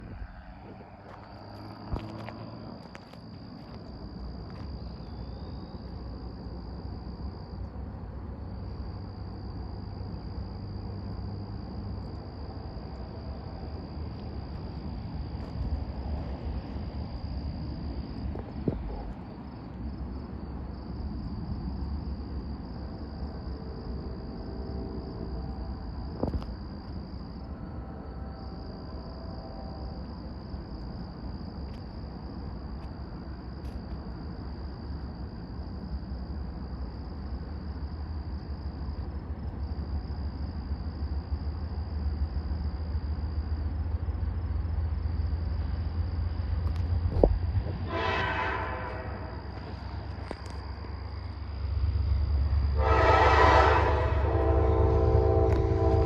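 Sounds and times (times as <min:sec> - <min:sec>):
insects trilling: 0:00.0 - 0:56.0.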